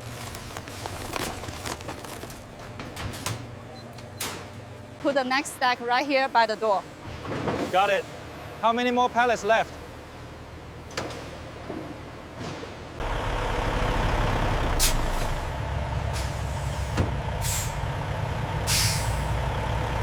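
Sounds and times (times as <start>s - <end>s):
truck engine rumbling: 0.0s - 2.9s, 9.3s - 20.0s
air brakes hissing: 14.7s - 17.9s, 18.6s - 19.5s.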